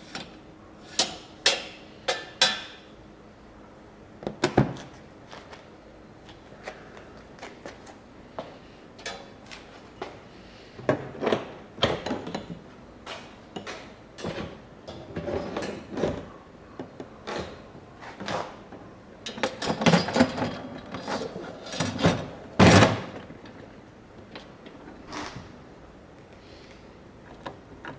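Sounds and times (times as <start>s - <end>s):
parts and tools clicking and rattling: 0.1s - 2.8s, 10.8s - 25.4s.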